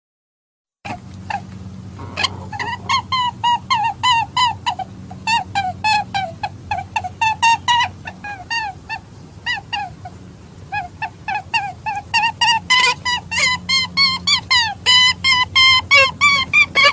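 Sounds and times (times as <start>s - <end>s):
steady low hum: 1.0s - 11.0s
rabbit squeaky calls: 1.3s - 16.9s.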